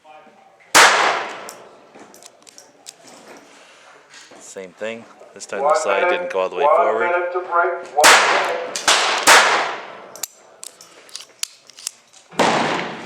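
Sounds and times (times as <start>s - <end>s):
pistol gunshots with echo: 0.7s - 1.7s, 8.0s - 10.2s, 12.4s - 13.0s
clicks of pistol handling: 1.2s - 3.5s, 10.1s - 12.3s.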